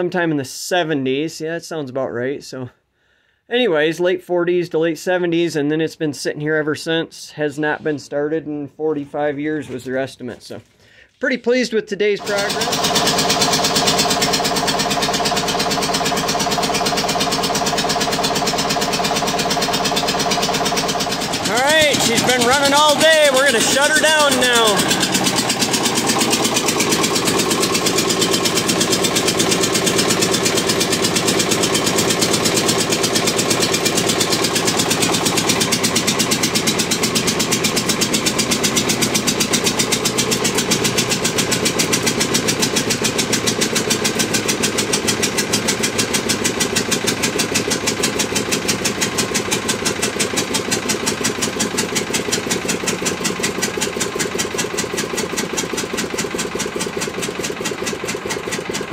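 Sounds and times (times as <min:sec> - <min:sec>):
diesel generator engine running: 0:12.2 - 0:58.9.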